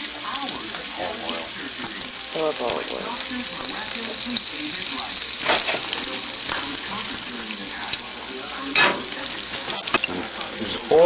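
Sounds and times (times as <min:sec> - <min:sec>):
food frying in oil: 0:00.0 - 0:11.0.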